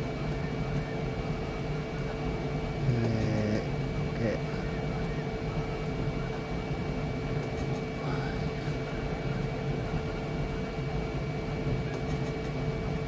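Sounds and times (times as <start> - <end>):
constant whine: 0.0 - 13.0
printer fans and motors humming: 0.0 - 13.0.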